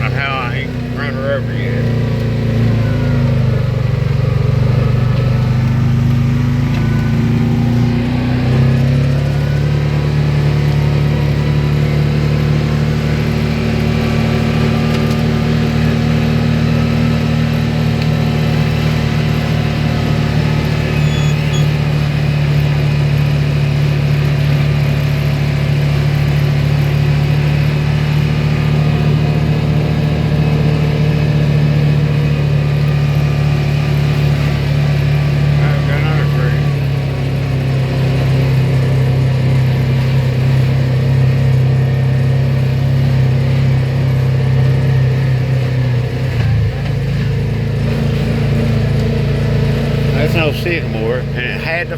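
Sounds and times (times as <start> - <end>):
farm vehicle engine running: 0.0 - 51.9.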